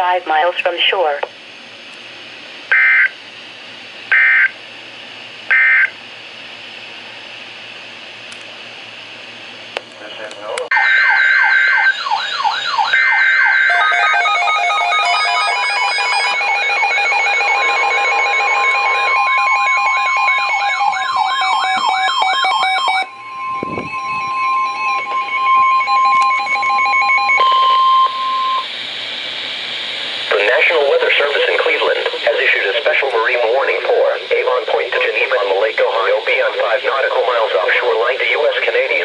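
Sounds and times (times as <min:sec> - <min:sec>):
long steady alarm tone: 0:02.7 - 0:03.2, 0:04.1 - 0:04.6, 0:05.5 - 0:06.0, 0:10.7 - 0:29.3
wavering siren wails: 0:10.7 - 0:28.7.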